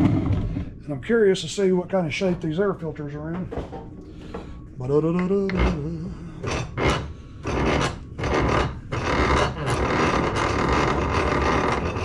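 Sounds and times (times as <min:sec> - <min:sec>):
air filter scraping in vise: 0:05.5 - 0:12.0.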